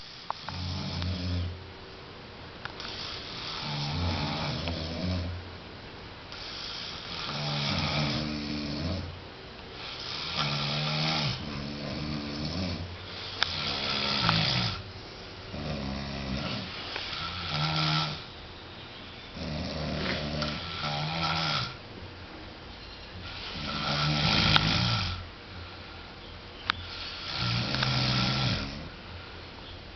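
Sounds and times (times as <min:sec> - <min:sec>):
people snoring: 0:00.0 - 0:01.6, 0:02.8 - 0:05.4, 0:06.3 - 0:09.1, 0:09.8 - 0:14.8, 0:15.5 - 0:18.3, 0:19.4 - 0:21.8, 0:23.2 - 0:25.2, 0:26.9 - 0:29.0.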